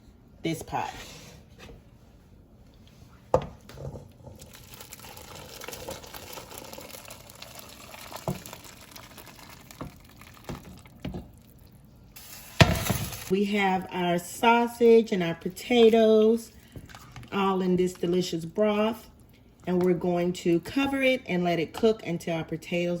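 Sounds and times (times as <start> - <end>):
liquid pouring: 4.1 - 13.3.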